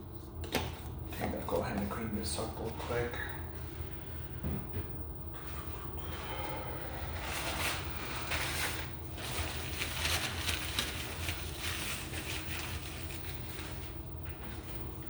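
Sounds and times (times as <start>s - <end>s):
low steady hum: 0.0s - 15.0s
rubbing and rustling of wiping: 5.4s - 15.0s.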